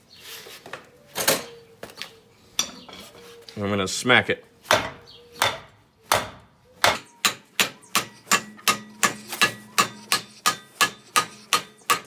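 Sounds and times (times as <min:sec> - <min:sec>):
hammer striking metal: 0:04.7 - 0:12.0.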